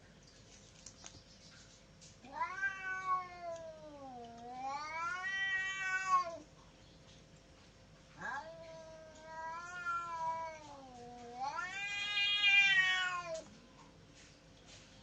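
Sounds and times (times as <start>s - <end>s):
cat yowling: 2.2s - 6.4s, 8.2s - 13.5s.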